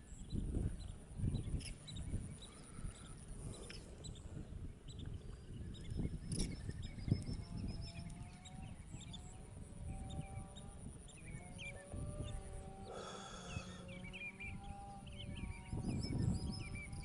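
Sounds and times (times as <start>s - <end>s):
flock of birds chirping: 0.0s - 17.0s
harsh bird call: 12.9s - 14.1s.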